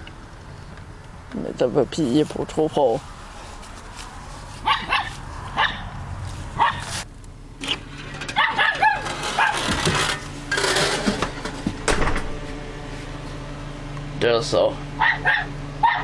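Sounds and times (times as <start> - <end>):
dog barking: 4.6 - 5.9, 6.6 - 6.9, 8.4 - 9.6, 15.0 - 16.0.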